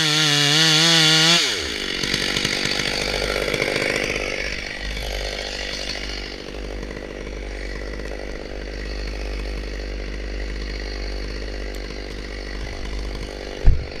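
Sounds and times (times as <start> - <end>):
chainsaw engine running: 0.0 - 14.0
low thump: 13.6 - 13.9.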